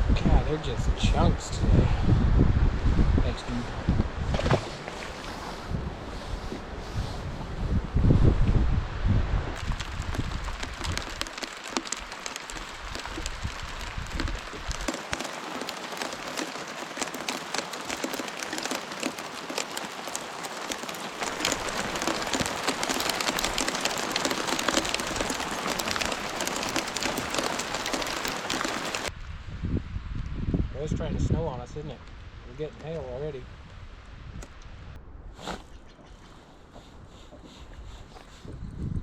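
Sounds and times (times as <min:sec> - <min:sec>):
hail and rain pattering: 0:09.6 - 0:29.1.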